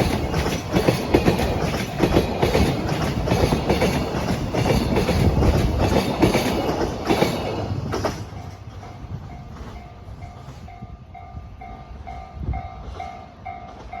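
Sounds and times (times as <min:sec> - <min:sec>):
train wheels clacking on rails: 0:00.0 - 0:14.0.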